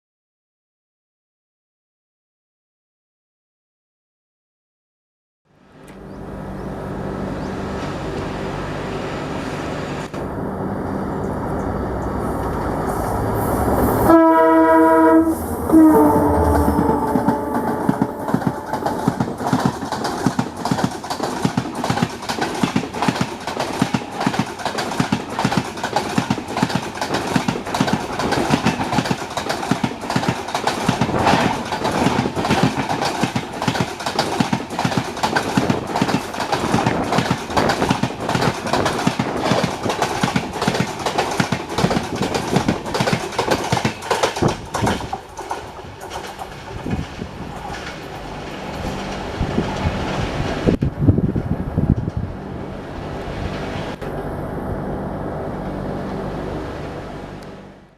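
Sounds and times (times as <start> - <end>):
diesel locomotive engine: 5.5 - 57.9
train horn blasts: 14.0 - 18.9
wheels clattering over rail joints: 16.7 - 52.3.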